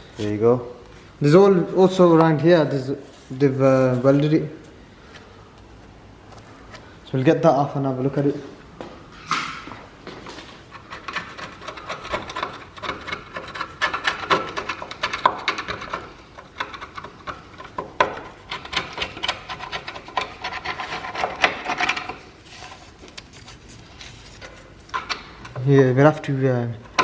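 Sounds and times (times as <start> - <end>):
scraping sealant by hand: 10.6 - 25.7.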